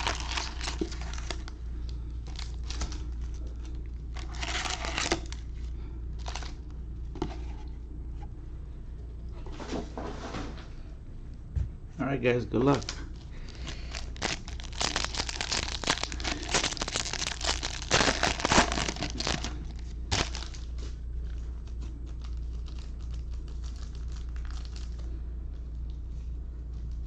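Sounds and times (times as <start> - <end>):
foil wrapper crinkling and tearing: 0.0 - 6.7, 12.7 - 20.8, 21.6 - 25.2.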